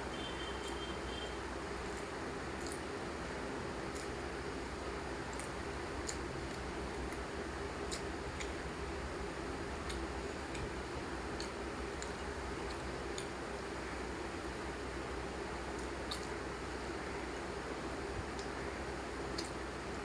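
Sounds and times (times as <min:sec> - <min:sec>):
steady background hum: 0:00.0 - 0:20.0
person chewing food: 0:01.9 - 0:03.0, 0:03.9 - 0:04.2, 0:05.2 - 0:08.7, 0:09.7 - 0:13.4, 0:15.7 - 0:16.4, 0:19.4 - 0:19.6.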